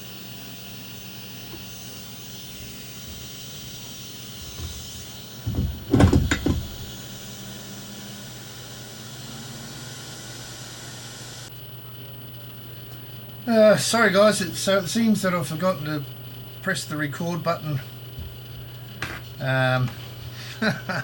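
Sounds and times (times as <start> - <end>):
equipment hum and hiss: 0.0 - 21.0
clunks and handling noise: 2.6 - 7.1, 18.2 - 20.4.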